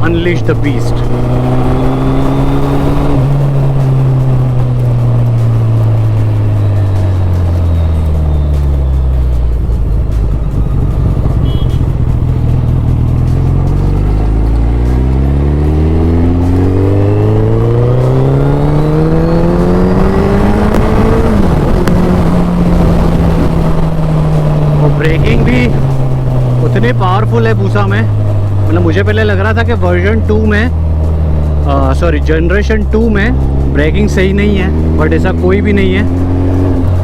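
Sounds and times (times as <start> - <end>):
motorcycle engine accelerating: 0.0 - 37.0
wind noise on microphone: 9.7 - 13.1, 19.7 - 26.6.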